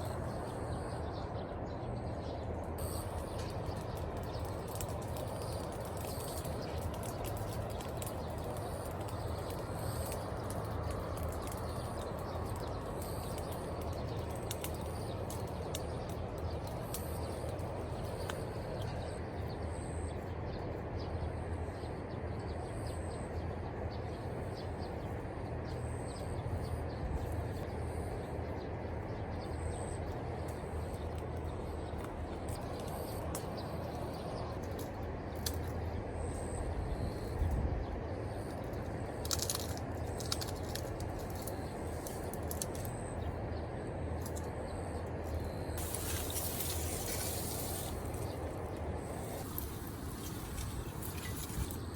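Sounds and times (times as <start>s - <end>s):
faint clicks: 3.2s - 19.1s.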